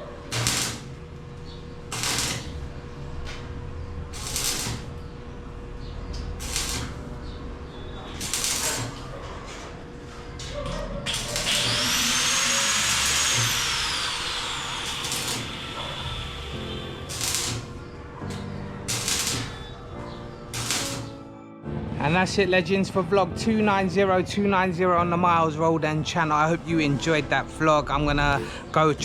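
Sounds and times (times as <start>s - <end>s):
angle grinder cutting metal: 0.3s - 1.0s, 1.9s - 2.6s, 4.2s - 5.0s, 6.4s - 7.0s, 8.2s - 9.0s, 11.1s - 19.9s, 20.5s - 21.2s.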